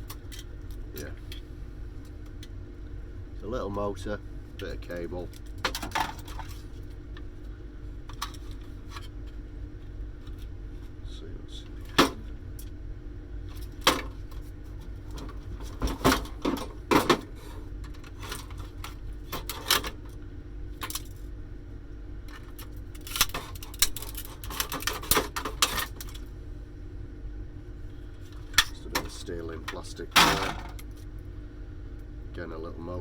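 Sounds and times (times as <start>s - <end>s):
parts clicking and rattling: 5.2s - 6.7s, 13.5s - 20.2s, 22.3s - 26.3s, 28.2s - 31.0s.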